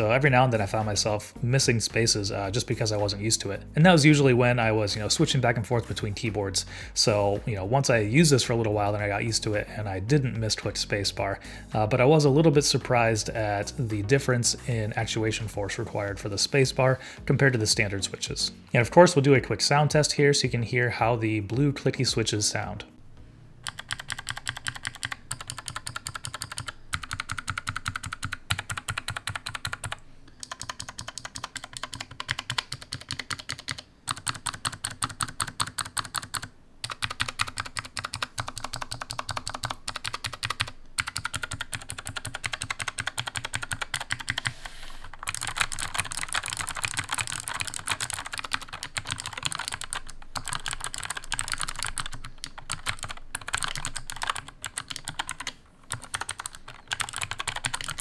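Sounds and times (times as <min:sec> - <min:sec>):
fast clicky keyboard typing: 0:23.6 - 0:58.0.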